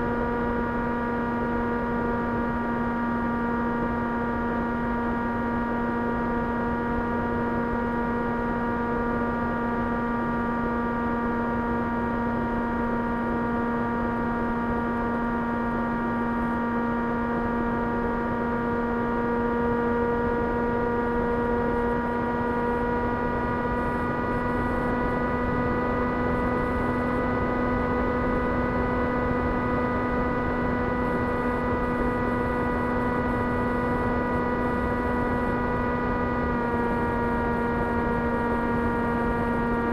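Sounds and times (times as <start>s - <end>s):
electric motor and propeller hum: 10.7s - 39.9s.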